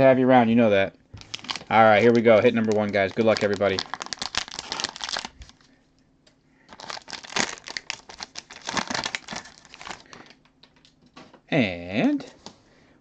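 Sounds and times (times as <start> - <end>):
plastic wrapping crinkling: 1.2 - 5.7, 6.7 - 11.1.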